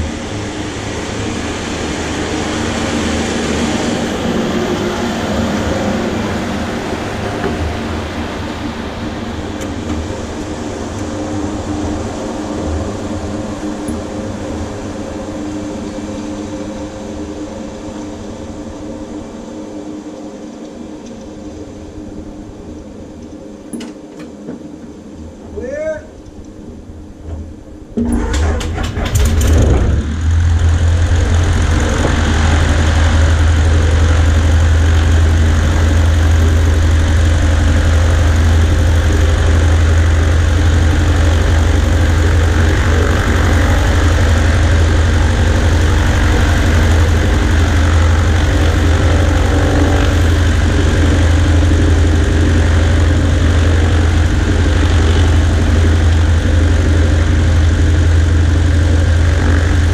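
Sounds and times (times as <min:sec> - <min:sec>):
piston engine starting and idling: 0:27.9 - 0:59.9.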